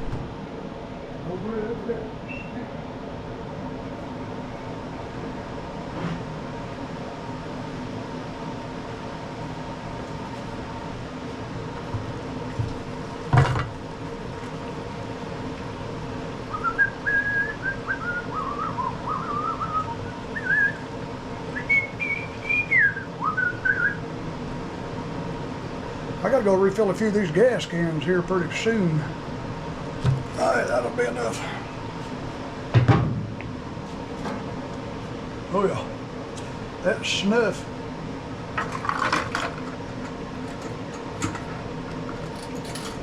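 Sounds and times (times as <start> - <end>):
steady hum: 0.0 - 43.0
person whistling a tune: 16.5 - 20.8, 21.5 - 24.0.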